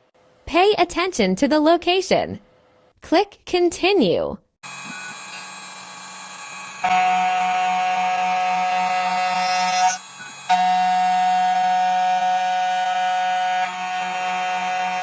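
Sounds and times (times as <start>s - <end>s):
spindle motor whining: 4.6s - 15.0s.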